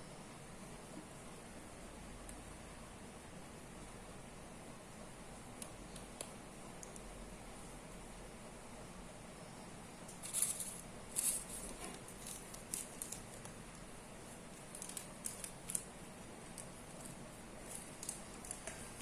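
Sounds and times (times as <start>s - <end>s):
dough crinkling and clicking: 5.4s - 7.2s, 10.1s - 19.0s.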